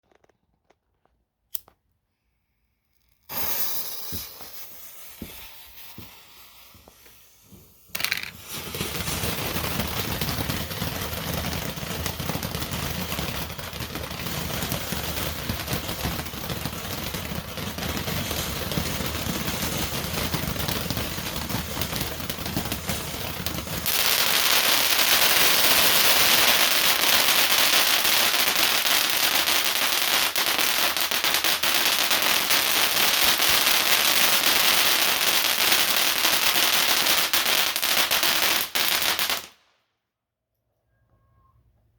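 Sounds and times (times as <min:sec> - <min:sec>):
firework hiss: 0:03.0 - 0:10.8, 0:14.1 - 0:39.5
firework fountain crackling: 0:03.0 - 0:39.6
firework sharp burst: 0:03.3 - 0:34.9.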